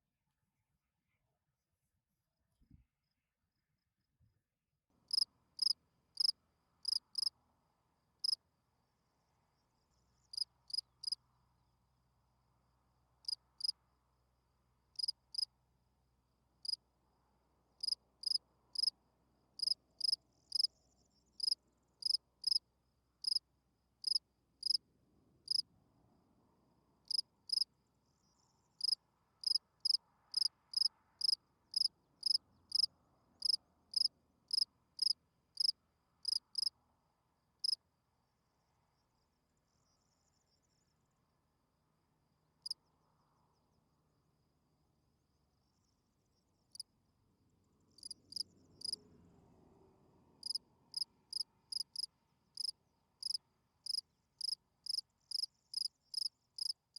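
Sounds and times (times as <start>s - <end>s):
cricket chirping: 5.1s - 7.4s, 8.2s - 8.4s, 9.2s - 11.2s, 13.2s - 13.8s, 15.0s - 15.5s, 17.8s - 24.8s, 25.5s - 25.7s, 27.0s - 36.8s, 37.6s - 37.9s, 42.6s - 44.6s, 45.2s - 46.9s, 47.7s - 49.0s, 50.4s - 56.9s.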